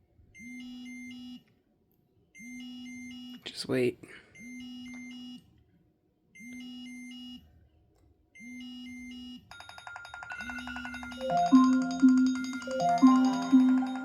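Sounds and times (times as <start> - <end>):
alarm chiming tones: 10.3 - 14.0
electronic alarm buzz and beeps: 10.4 - 14.0.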